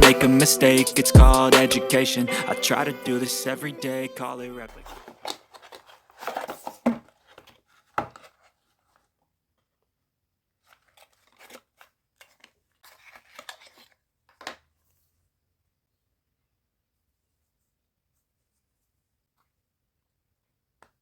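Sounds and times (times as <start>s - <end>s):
rustling and scraping handling noises: 4.7s - 9.7s, 10.6s - 15.2s.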